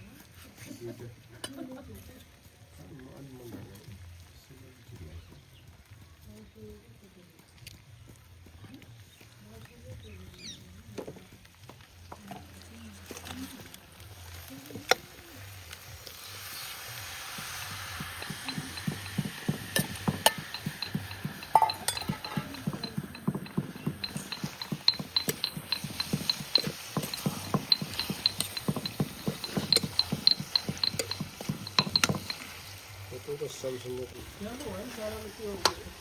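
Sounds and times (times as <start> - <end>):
metal utensil clinking on pot: 17.4 - 32.8.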